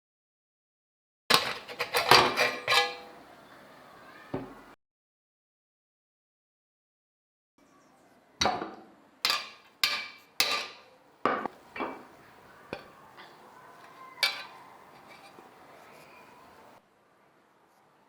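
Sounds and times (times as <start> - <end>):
metal striking metal: 8.4 - 12.1.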